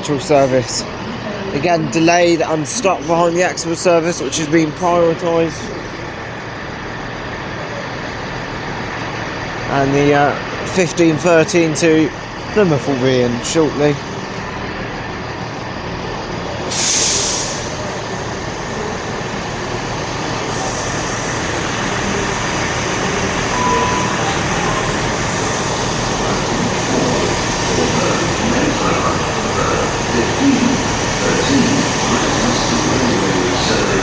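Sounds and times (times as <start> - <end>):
broad even noise: 0.0 - 34.0
diesel train engine idling: 0.0 - 34.0
air hiss burst: 16.7 - 18.2.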